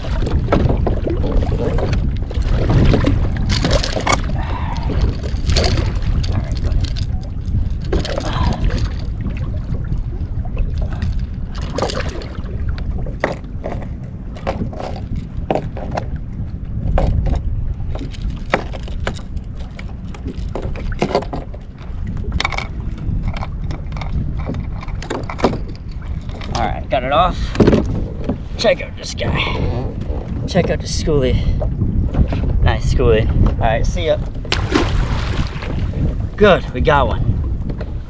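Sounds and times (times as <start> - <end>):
wind and water rumble: 0.0 - 38.0
knocks and scrapes of handling gear: 18.0 - 21.6.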